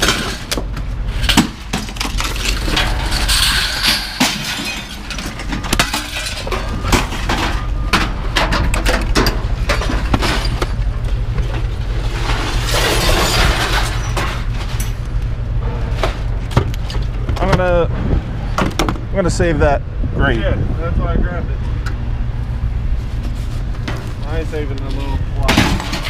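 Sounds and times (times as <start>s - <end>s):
scrap metal clanking onto pile: 0.0s - 10.8s, 11.5s - 15.0s, 25.4s - 26.0s
steady low hum: 0.0s - 26.0s.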